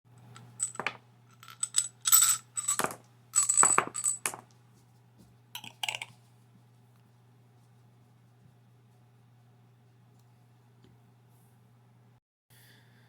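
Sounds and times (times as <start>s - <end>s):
metal tin clinking and rattling: 0.6s - 4.4s.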